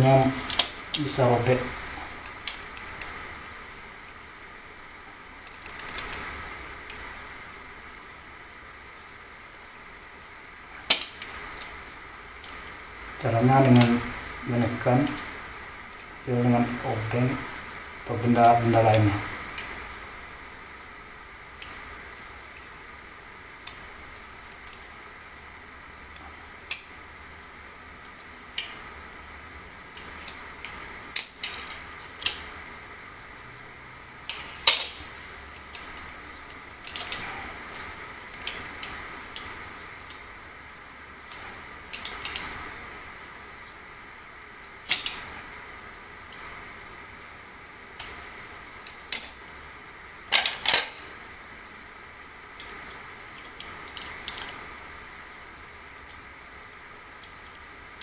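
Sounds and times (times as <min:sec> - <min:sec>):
metal parts clicking together: 0:00.4 - 0:01.2, 0:05.4 - 0:07.0, 0:10.8 - 0:12.6, 0:28.0 - 0:28.9, 0:29.9 - 0:32.5, 0:34.2 - 0:40.2, 0:41.2 - 0:42.6, 0:44.8 - 0:45.3, 0:48.8 - 0:49.5, 0:50.3 - 0:51.2, 0:52.6 - 0:54.7.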